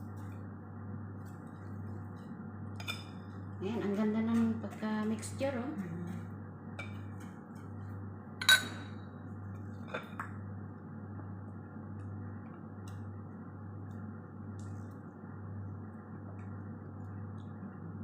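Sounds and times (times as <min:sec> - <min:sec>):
steady low hum: 0:00.0 - 0:18.0
utensil clinking against bowl: 0:08.4 - 0:09.0.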